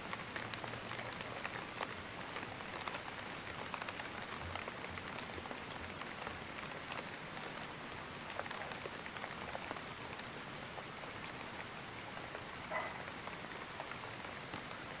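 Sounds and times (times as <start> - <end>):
steady rainfall: 0.0 - 15.0.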